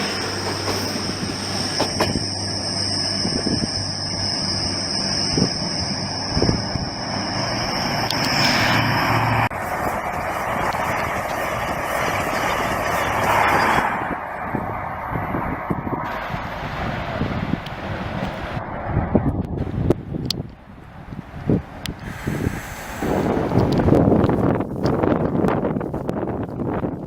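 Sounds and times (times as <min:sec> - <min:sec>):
high-pitched squeal: 0:00.0 - 0:19.2
train rumbling: 0:00.0 - 0:27.0.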